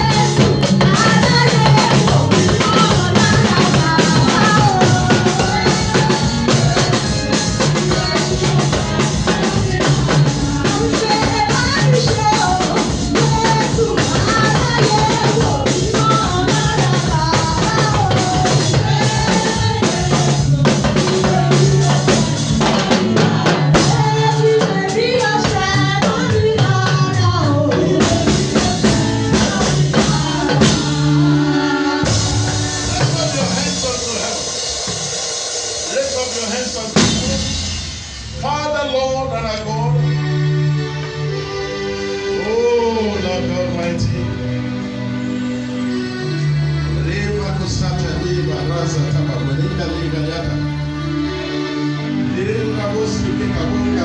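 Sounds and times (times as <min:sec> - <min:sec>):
person singing: 0:00.0 - 0:34.8, 0:41.7 - 0:44.6
drum kit: 0:00.0 - 0:42.0
bass guitar: 0:00.0 - 0:54.0.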